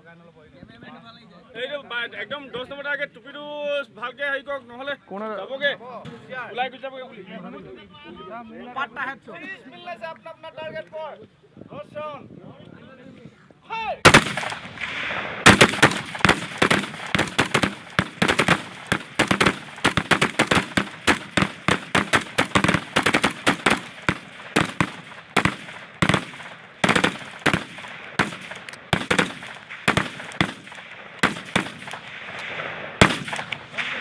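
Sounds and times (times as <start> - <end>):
gunshots with echo: 14.0 - 34.0.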